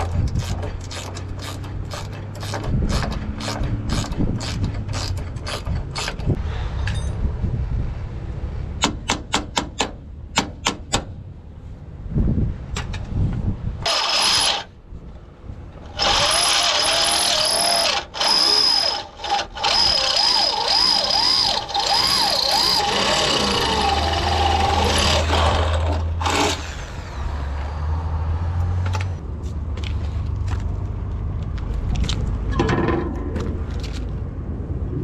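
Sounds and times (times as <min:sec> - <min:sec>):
power tool on metal: 0:13.8 - 0:14.7, 0:15.9 - 0:26.9.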